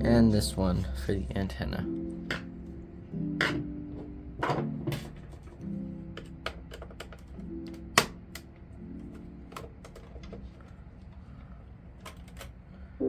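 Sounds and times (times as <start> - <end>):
clicks of plastic parts handled: 3.4 - 11.2, 12.0 - 12.6.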